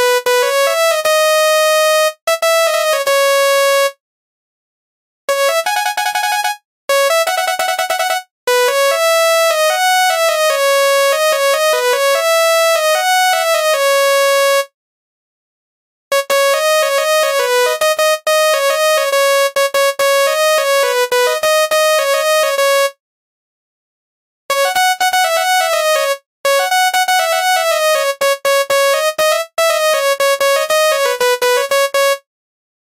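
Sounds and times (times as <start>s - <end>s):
electronic bus horn tune: 5.3s - 14.7s, 16.1s - 23.0s, 24.5s - 32.2s.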